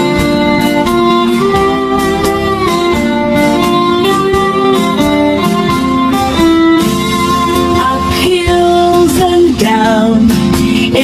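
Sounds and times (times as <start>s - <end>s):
steady beat: 0.0s - 9.4s
fiddle melody: 0.0s - 11.0s
plucked guitar accompaniment: 0.0s - 11.0s.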